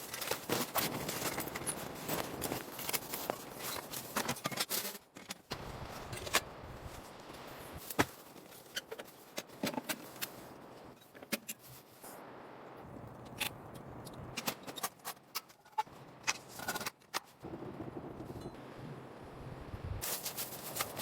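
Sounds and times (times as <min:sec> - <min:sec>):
rustling: 0:20.0 - 0:21.0.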